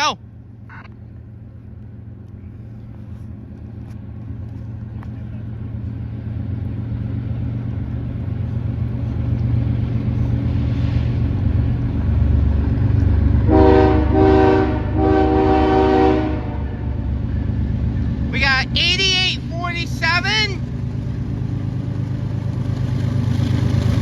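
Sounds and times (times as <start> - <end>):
diesel locomotive rumble: 0.0 - 24.0
locomotive air horn blasts: 13.4 - 17.1.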